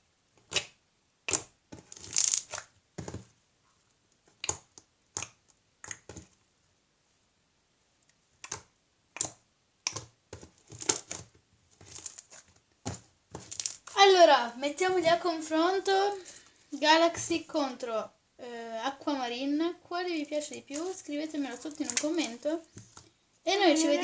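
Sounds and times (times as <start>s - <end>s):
slime sticky clicks and pops: 0.5s - 1.5s, 4.4s - 6.1s, 8.4s - 10.1s.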